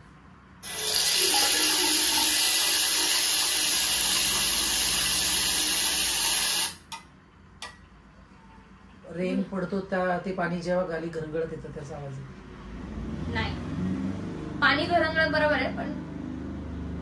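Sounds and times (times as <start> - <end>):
tap water filling a container: 0.6 - 6.8.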